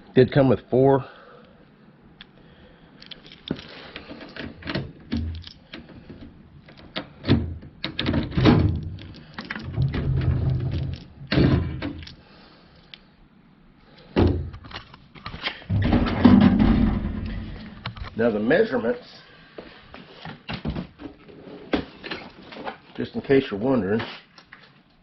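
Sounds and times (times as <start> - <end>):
drawers knocking shut: 7.3 - 9.0, 9.6 - 12.0, 15.7 - 17.5
metal drawers sliding: 9.5 - 12.0, 15.7 - 17.6.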